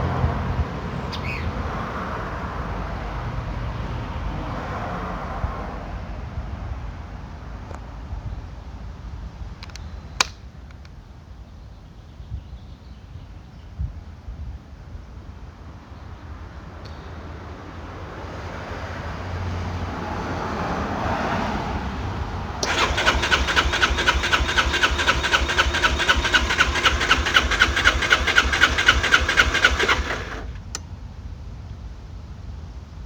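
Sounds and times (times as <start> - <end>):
sharp click: 9.6 - 10.9
scooter starter cranking: 22.6 - 30.8.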